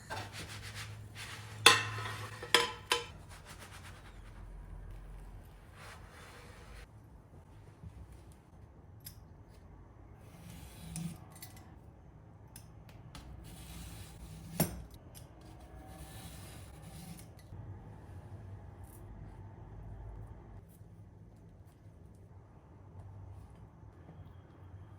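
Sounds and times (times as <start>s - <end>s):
kitchen handling clicks and rubbing: 1.5s - 3.2s.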